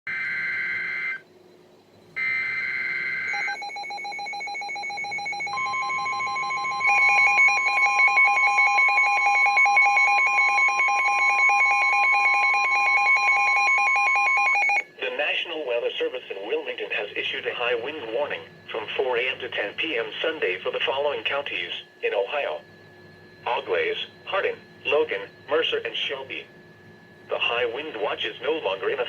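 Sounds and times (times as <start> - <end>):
rapid pulsing beep: 2.2 - 15.8, 16.5 - 29.0
warbling digital data bursts: 2.6 - 12.9, 23.3 - 29.0
steady alert tone: 4.4 - 8.2.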